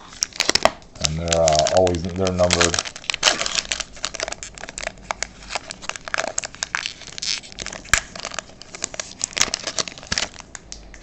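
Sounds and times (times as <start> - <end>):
foil wrapper crinkling: 0.0 - 10.9
cards being handled: 0.2 - 4.4.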